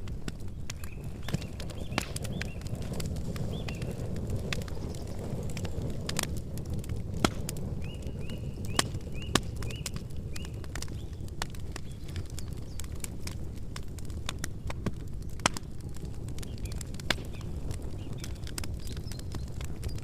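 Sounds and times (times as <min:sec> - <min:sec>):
campfire crackling: 0:00.0 - 0:20.0
wood fire pops: 0:00.0 - 0:20.0
bird chirping: 0:00.8 - 0:02.7, 0:07.8 - 0:11.2.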